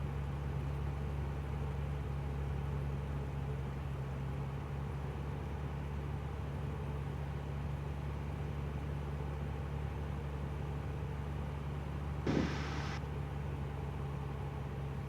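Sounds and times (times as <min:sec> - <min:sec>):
light aircraft engine drone: 0:00.0 - 0:15.0
burst of hiss: 0:12.3 - 0:13.0.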